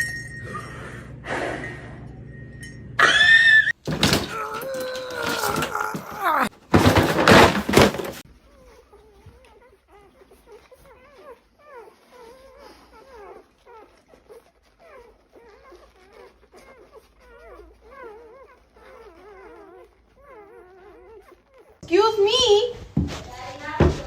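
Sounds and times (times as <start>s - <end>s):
dog whining and whimpering: 0.0s - 21.8s
loud clatter: 3.8s - 8.2s.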